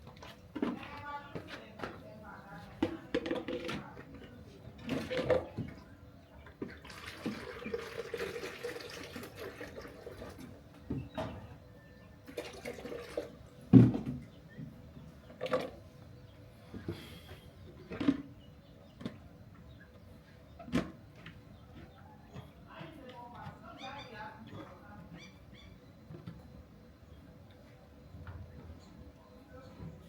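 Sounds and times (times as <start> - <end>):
water pouring: 6.8 - 10.4, 12.3 - 13.4.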